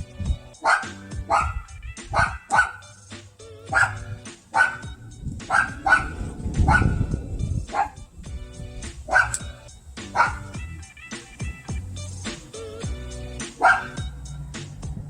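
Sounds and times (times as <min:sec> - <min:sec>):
dog barking: 0:00.6 - 0:03.0, 0:03.7 - 0:07.1, 0:07.7 - 0:08.0, 0:09.1 - 0:09.5, 0:10.1 - 0:10.6, 0:13.6 - 0:14.1.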